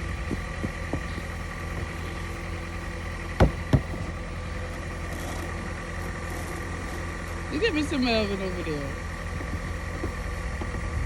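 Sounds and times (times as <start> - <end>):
car engine idling: 0.0 - 11.0
loud thumps: 3.4 - 4.2.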